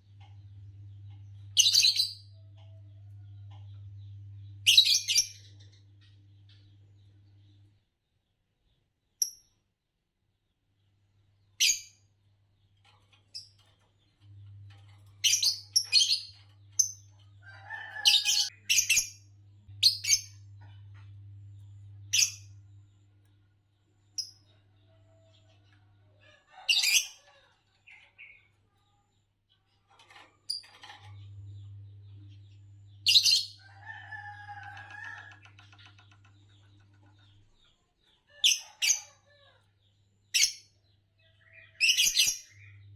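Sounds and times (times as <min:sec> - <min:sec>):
lovebirds chirping: 0:00.1 - 0:07.6, 0:14.4 - 0:29.0
faint low hum: 0:19.3 - 0:24.0.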